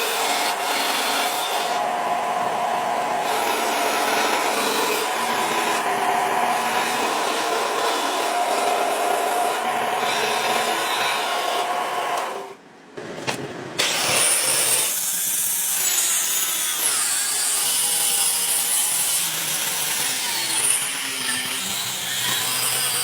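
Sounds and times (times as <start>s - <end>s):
tool grinding steel blade: 13.8s - 23.0s.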